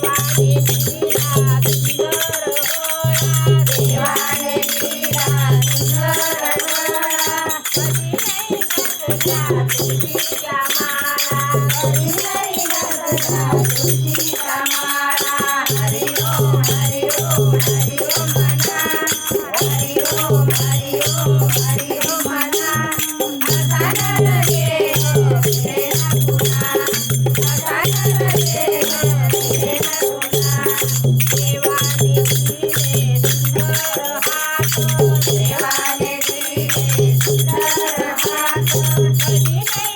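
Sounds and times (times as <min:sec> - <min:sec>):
rattling hand percussion: 0:00.0 - 0:39.9
women singing devotional song: 0:00.0 - 0:39.9.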